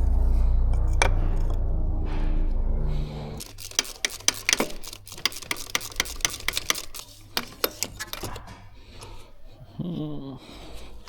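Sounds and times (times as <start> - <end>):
steady hum: 0.0 - 3.4
metallic clicks from hand tools: 3.4 - 8.3.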